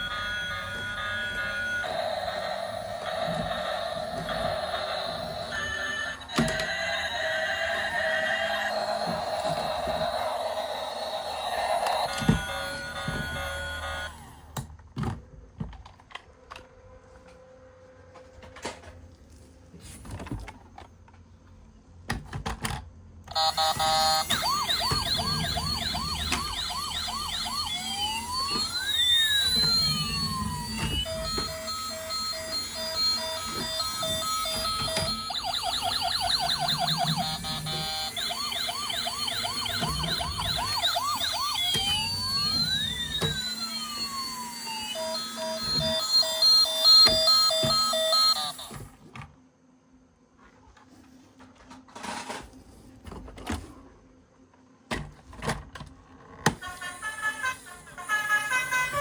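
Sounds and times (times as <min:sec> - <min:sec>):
toy siren yelping and wailing: 0:00.0 - 0:14.5, 0:23.3 - 0:48.8, 0:56.6 - 0:59.0.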